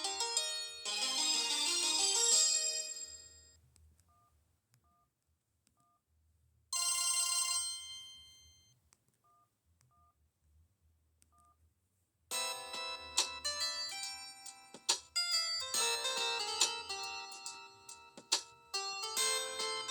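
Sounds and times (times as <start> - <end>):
phone ringtone: 0.0 - 3.6, 6.8 - 8.7, 12.3 - 19.9.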